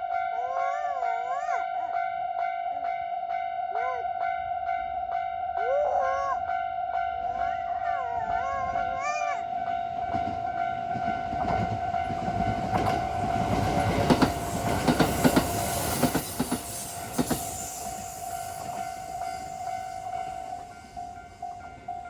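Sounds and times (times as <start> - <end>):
level crossing warning bell: 0.0 - 22.0
train wheels clacking over rail joints: 10.1 - 20.2.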